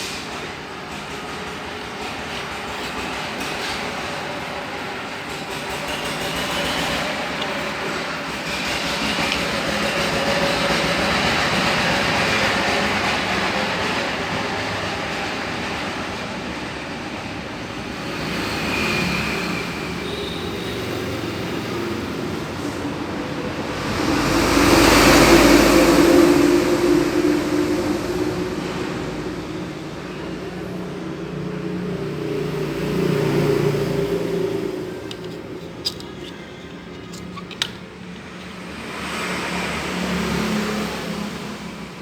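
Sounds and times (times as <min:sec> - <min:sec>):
road traffic noise: 0:00.0 - 0:42.0.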